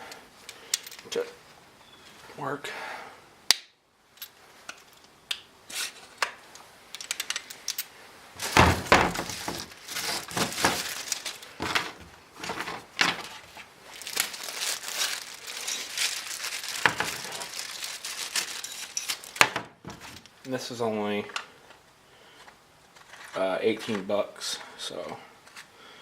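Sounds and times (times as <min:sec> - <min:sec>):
packaging crinkling and tearing: 0:08.4 - 0:19.4.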